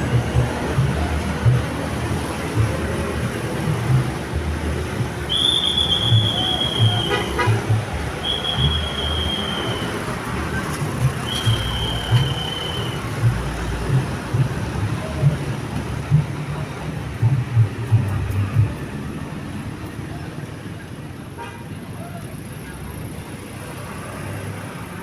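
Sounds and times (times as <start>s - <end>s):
road traffic rumble: 0.0s - 25.0s
high steady whistle tones: 5.2s - 10.6s, 11.2s - 13.6s
low thumps: 10.8s - 18.9s.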